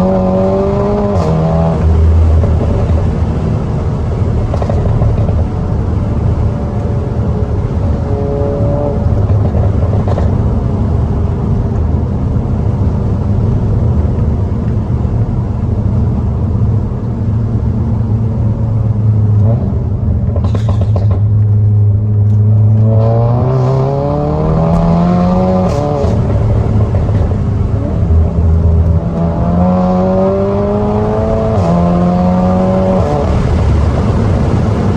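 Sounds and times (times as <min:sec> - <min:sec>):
turbocharged car engine: 0:00.0 - 0:34.9.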